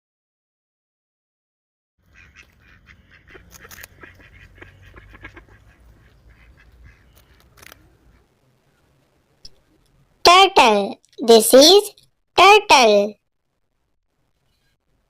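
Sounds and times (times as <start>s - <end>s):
waterfowl honking and quacking: 2.0s - 7.4s.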